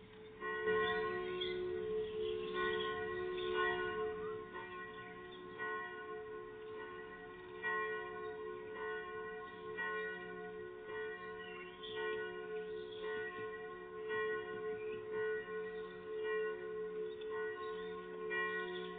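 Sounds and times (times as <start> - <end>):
church bells ringing: 0.0 - 18.9.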